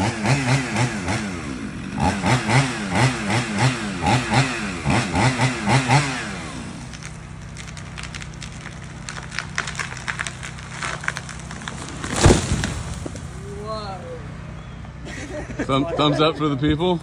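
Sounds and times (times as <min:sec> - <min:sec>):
engine revving: 0:00.0 - 0:17.0
sharp cracks: 0:06.0 - 0:13.8.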